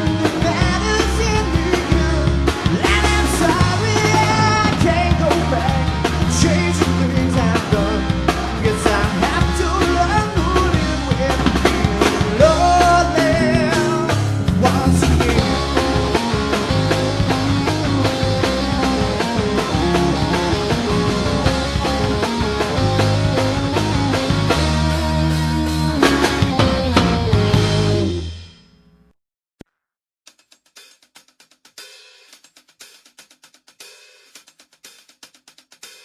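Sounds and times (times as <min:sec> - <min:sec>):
rock music with singing: 0:00.0 - 0:28.4.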